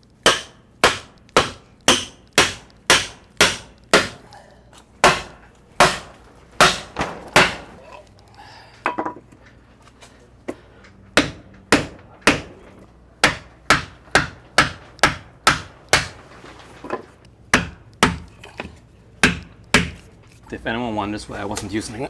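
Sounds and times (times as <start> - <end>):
hammer striking wood: 0.2 - 4.4, 5.0 - 8.0, 11.2 - 20.1.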